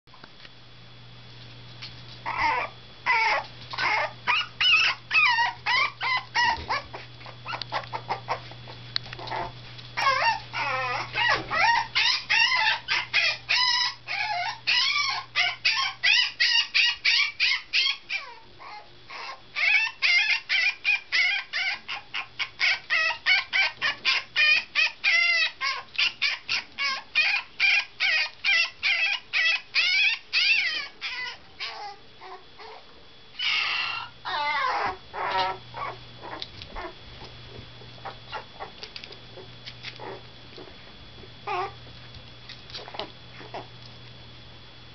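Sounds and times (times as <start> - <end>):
puppy yapping and yelping: 2.2 - 8.6, 9.2 - 37.3, 38.0 - 38.8, 41.4 - 41.8.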